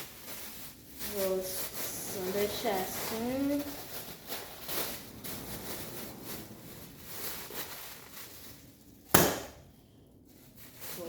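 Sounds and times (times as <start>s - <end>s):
plastic bag crinkling: 0.0s - 11.0s
sharp crack: 9.1s - 9.8s.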